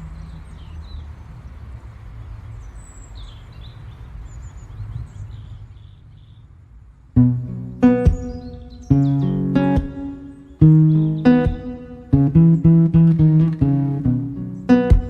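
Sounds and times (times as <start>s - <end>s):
small birds chirping: 2.1s - 6.6s, 7.2s - 15.0s
plucked guitar chord: 7.2s - 15.0s
steady low rumble: 7.2s - 15.0s.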